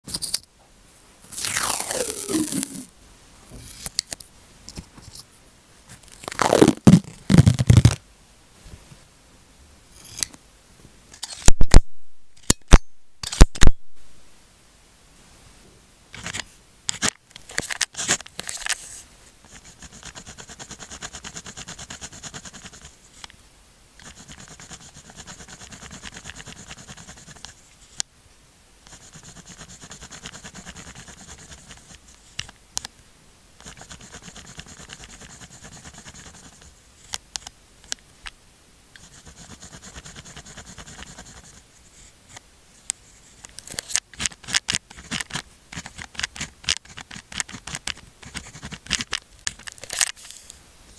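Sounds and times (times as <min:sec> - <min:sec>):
pen scratching on paper: 0:19.5 - 0:23.0, 0:24.0 - 0:27.6, 0:28.9 - 0:32.1, 0:33.6 - 0:36.7, 0:39.0 - 0:42.1, 0:44.2 - 0:49.1.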